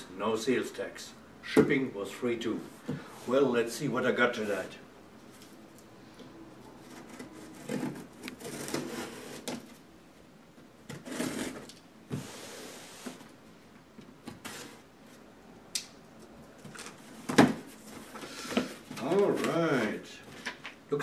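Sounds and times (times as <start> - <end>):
cardboard rustling and scraping: 6.8 - 9.8, 10.9 - 13.3, 14.3 - 14.8, 16.6 - 20.5.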